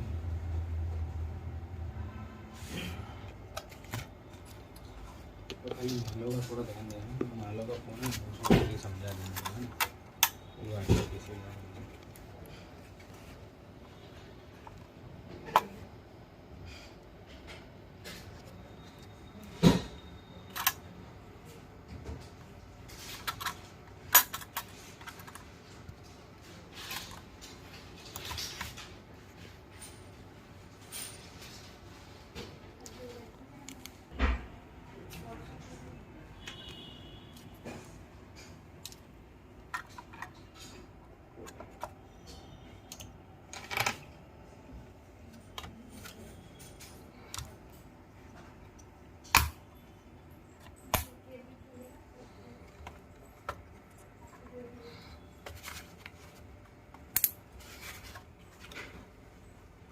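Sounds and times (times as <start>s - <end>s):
computer parts clicking and knocking: 3.5s - 12.2s, 19.6s - 20.9s, 22.1s - 26.1s, 38.3s - 44.2s, 49.2s - 49.7s, 56.9s - 57.4s.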